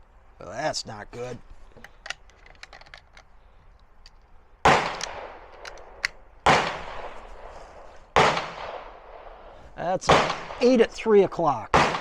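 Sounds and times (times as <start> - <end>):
faint clicks: 1.8 - 4.3
gunshots with echo: 4.6 - 5.6, 6.4 - 7.2, 8.2 - 10.8, 11.7 - 12.0.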